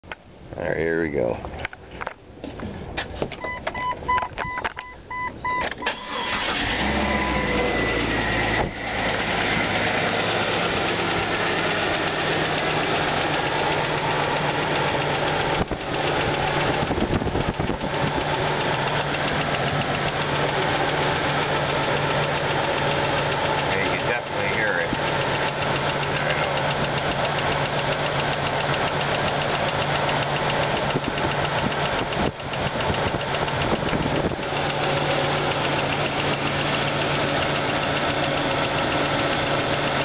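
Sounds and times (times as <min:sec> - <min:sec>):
car engine cranking and running: 0:01.1 - 0:40.0
engine knock: 0:09.7 - 0:40.0.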